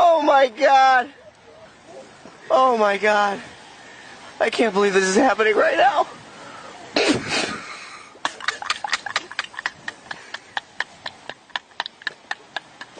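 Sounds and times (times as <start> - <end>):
short breathy burst: 6.3 - 8.2.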